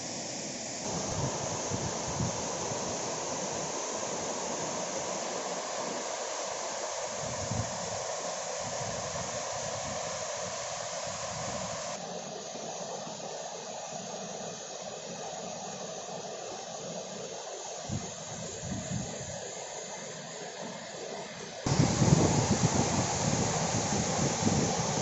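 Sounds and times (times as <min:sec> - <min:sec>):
waterfall rushing: 0:00.9 - 0:07.2, 0:21.7 - 0:25.0
wind buffeting microphone: 0:21.7 - 0:25.0.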